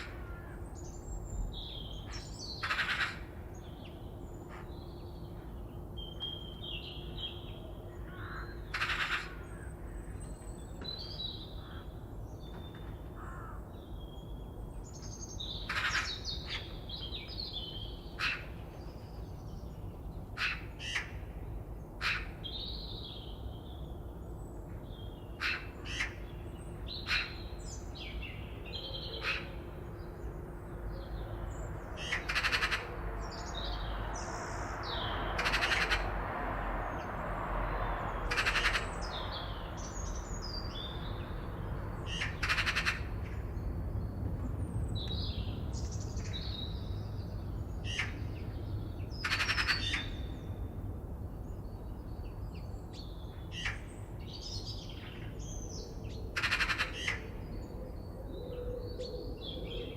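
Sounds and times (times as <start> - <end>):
harsh rasping bird calls: 2.0 - 3.4, 8.0 - 10.0, 15.6 - 16.7, 18.1 - 18.6, 20.4 - 21.2, 22.0 - 22.4, 25.4 - 26.3, 27.0 - 27.6, 29.0 - 29.7, 32.0 - 33.5, 35.0 - 36.2, 38.2 - 40.2, 42.0 - 43.4, 47.8 - 48.3, 49.2 - 50.3, 53.5 - 53.9, 56.3 - 57.5
birds singing and chirping: 21.8 - 36.2, 38.0 - 50.7, 51.3 - 59.9.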